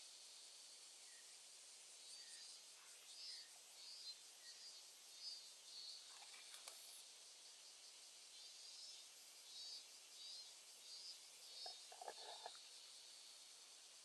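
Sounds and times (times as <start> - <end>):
faint insects chirping: 0.0 - 14.0.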